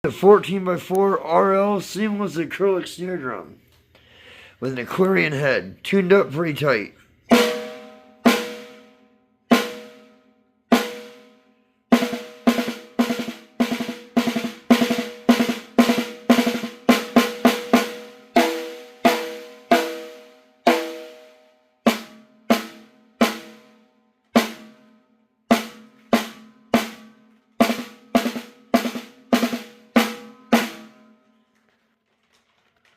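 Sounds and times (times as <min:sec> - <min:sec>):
snare drum hits ringing: 0:07.3 - 0:08.9.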